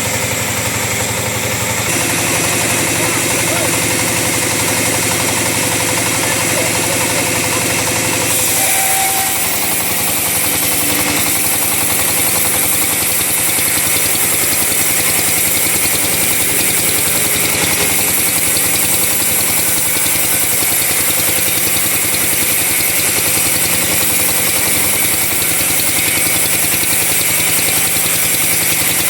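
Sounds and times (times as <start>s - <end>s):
chainsaw sawing wood: 1.8s - 29.0s.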